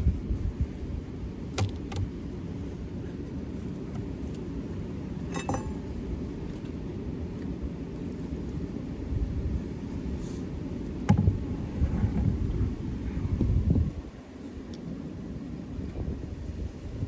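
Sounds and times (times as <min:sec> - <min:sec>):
wind rumbling on microphone: 0:00.0 - 0:17.0
hive frames clicking: 0:01.5 - 0:02.2.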